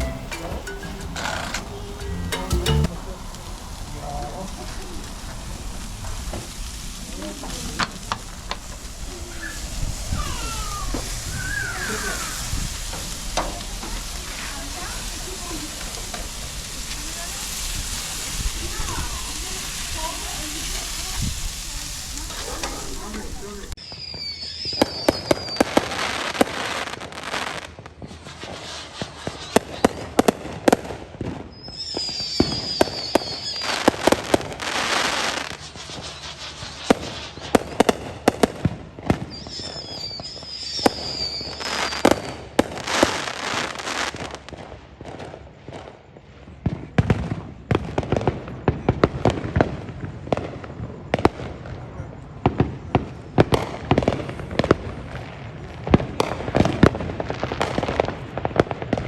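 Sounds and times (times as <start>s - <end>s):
high wavering firework whistle: 0.0s - 23.1s, 23.8s - 26.0s, 28.2s - 30.1s, 31.4s - 38.2s, 39.1s - 43.2s
crackling hiss: 0.0s - 46.7s
fireworks cracking and popping: 0.0s - 59.0s.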